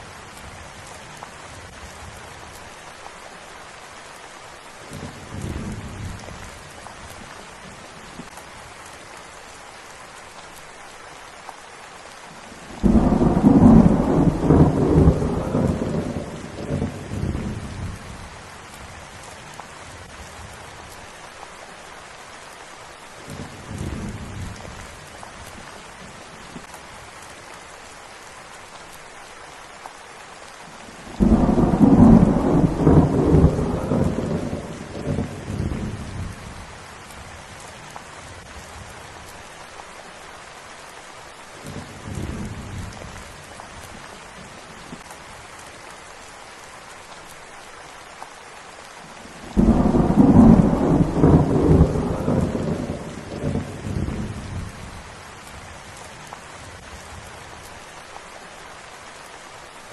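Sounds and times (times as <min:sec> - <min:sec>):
steady rain falling: 0:00.0 - 0:59.9
thunder rumbling: 0:12.7 - 0:18.1, 0:31.1 - 0:36.6, 0:49.4 - 0:55.0.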